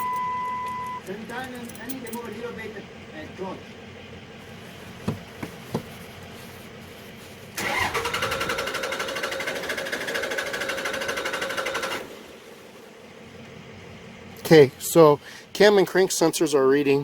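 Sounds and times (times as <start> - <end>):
diesel engine cranking on starter: 7.5 - 13.2.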